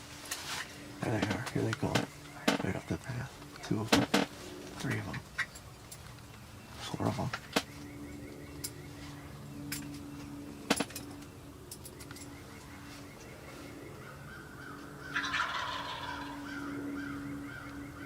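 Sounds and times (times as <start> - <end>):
turkey gobbling: 14.7 - 17.7.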